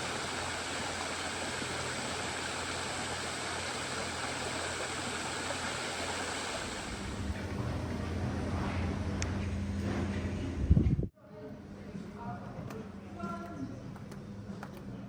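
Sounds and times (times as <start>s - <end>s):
water falling and splashing: 0.0s - 7.2s.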